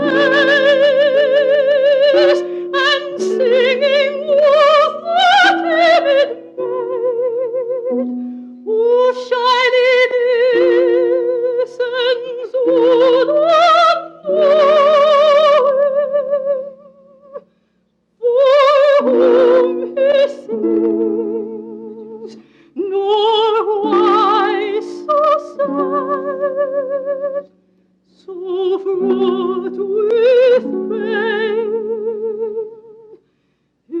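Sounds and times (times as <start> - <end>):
held instrumental chords: 0.0 - 6.9
soprano singing classical song: 0.0 - 34.0.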